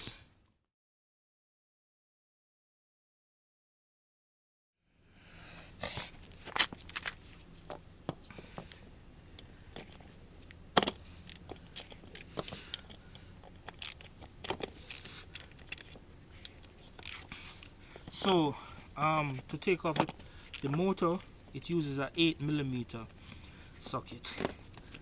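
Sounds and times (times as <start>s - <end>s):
hand tools and metal parts clinking: 9.4s - 25.0s.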